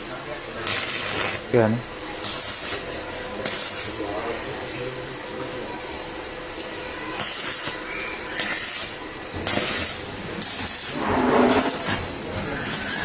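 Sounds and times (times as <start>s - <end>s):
arc welding crackling hiss: 0.6s - 4.2s, 7.2s - 13.0s.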